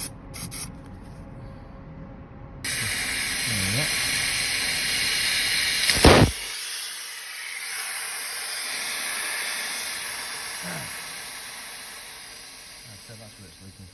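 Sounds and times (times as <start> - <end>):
pipe bursting with a bang: 2.7 - 7.4
high hiss of escaping gas: 2.7 - 13.9.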